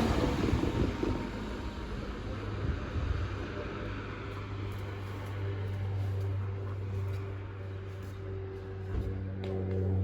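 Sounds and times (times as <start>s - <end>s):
electric train running past: 0.0s - 4.3s.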